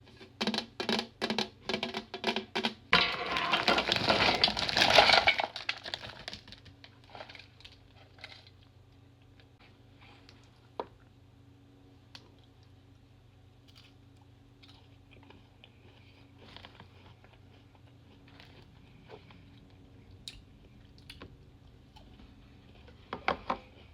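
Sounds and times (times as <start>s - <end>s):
potato chips crunching: 3.0s - 8.6s.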